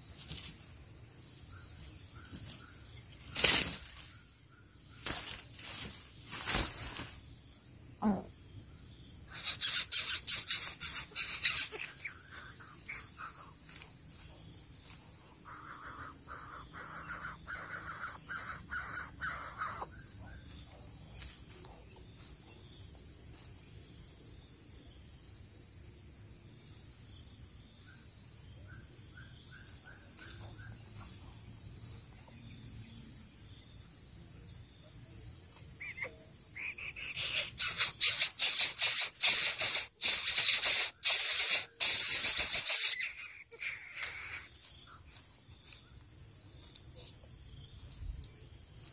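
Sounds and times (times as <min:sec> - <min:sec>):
high insect drone: 0:00.0 - 0:48.9
bird chick harsh rattling: 0:09.3 - 0:12.0, 0:36.8 - 0:44.5
bird chick short calls: 0:35.8 - 0:44.5.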